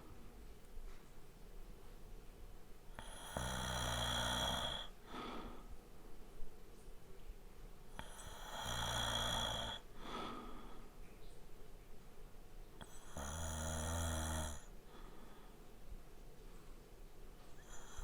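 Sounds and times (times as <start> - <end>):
man snoring lightly: 2.9 - 5.5, 8.0 - 9.9, 12.8 - 14.7, 17.6 - 18.0.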